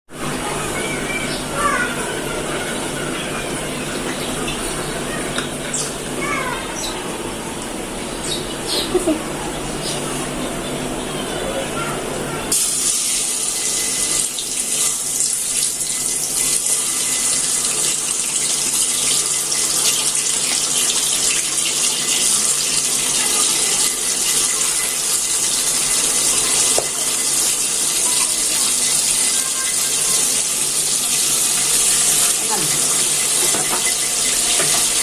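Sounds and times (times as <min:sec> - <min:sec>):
tap water running into sink: 0:12.5 - 0:35.0.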